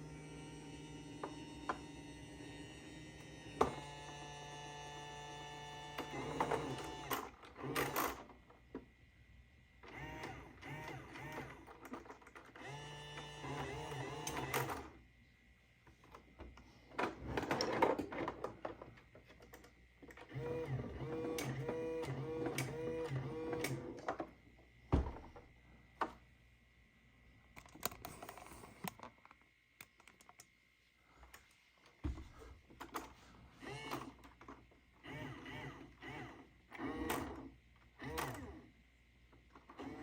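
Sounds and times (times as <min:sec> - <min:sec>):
small motors whirring: 0:12.6 - 0:14.9.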